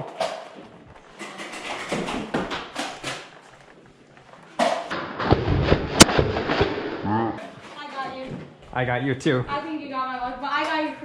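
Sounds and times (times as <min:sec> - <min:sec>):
sharp crack: 0:04.6 - 0:07.2.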